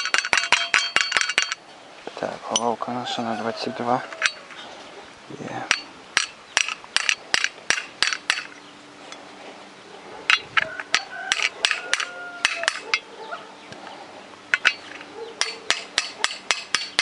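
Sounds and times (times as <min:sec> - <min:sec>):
hammer tapping on metal: 0:00.0 - 0:01.6, 0:05.7 - 0:08.6, 0:10.3 - 0:13.0, 0:14.5 - 0:17.0.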